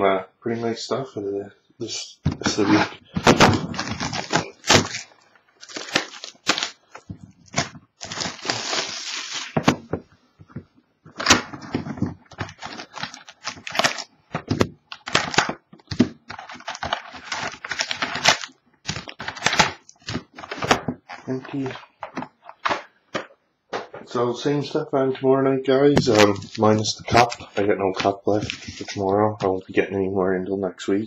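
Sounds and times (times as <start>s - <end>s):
plastic wrap crinkling and tearing: 2.4s - 9.8s, 11.1s - 23.3s, 26.0s - 29.1s.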